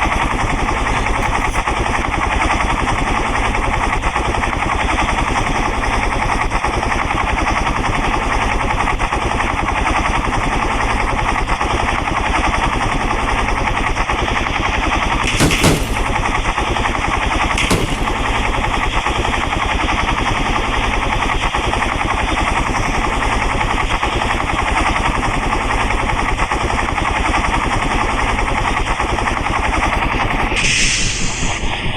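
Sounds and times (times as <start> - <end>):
helicopter rotor chopping: 0.0 - 31.9
sharp cracks: 15.2 - 16.6.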